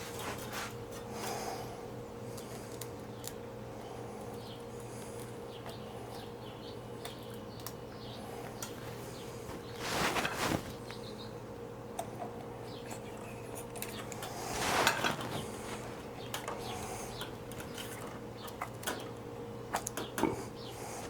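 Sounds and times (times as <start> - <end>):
scraping rustle: 0.0 - 0.8, 8.7 - 11.1, 13.0 - 18.2
steady low hum: 0.0 - 21.0.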